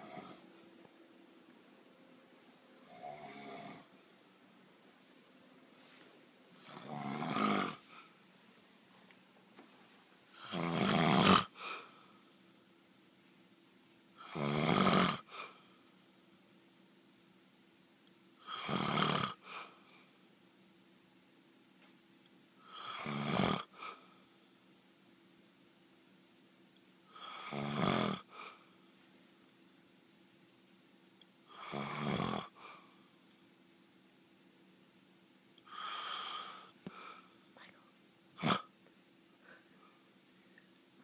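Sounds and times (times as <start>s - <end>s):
man snoring: 0.0s - 0.4s, 2.9s - 3.9s, 6.6s - 7.9s, 10.4s - 11.6s, 14.2s - 15.3s, 18.4s - 19.5s, 22.6s - 23.8s, 27.1s - 28.6s, 31.5s - 32.6s, 35.7s - 36.8s, 38.4s - 38.7s.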